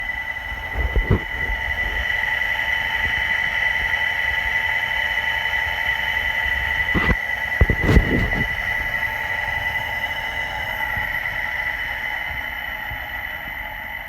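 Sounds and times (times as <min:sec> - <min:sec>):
dryer motor whining: 0:00.0 - 0:14.0.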